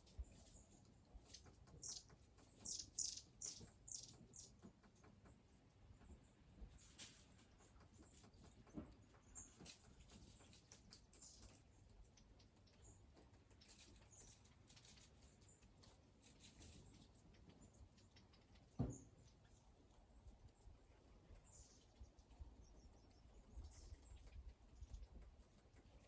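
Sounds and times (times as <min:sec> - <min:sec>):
high bird chirps: 0:01.8 - 0:04.6.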